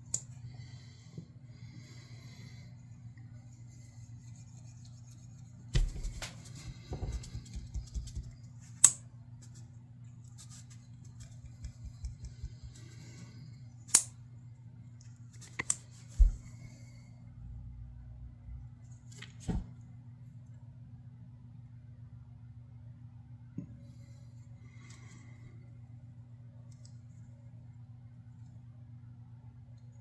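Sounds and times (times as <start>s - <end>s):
steady low hum: 0.0s - 30.0s
sharp clicks and knocks: 11.0s - 12.8s
rustling handling noise: 15.2s - 16.7s.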